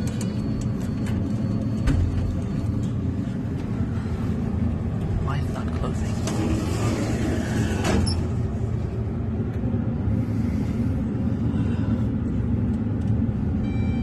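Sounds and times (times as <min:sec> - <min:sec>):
elevator running rumble: 0:00.0 - 0:14.0
short electronic beep: 0:13.6 - 0:14.0.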